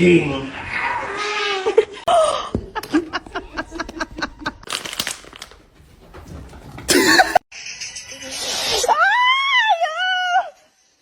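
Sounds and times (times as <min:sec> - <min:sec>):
person laughing: 0:06.9 - 0:07.4.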